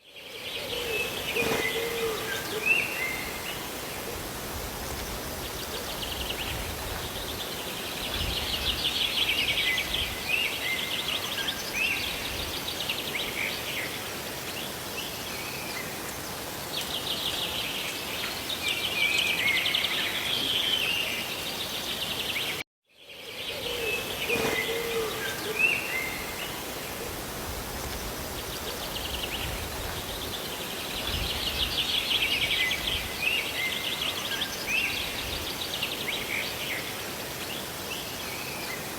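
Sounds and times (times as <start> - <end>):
rain and falling water: 0.3 - 22.6, 24.1 - 38.9
birds trilling and chirping: 0.6 - 12.9, 23.5 - 27.2.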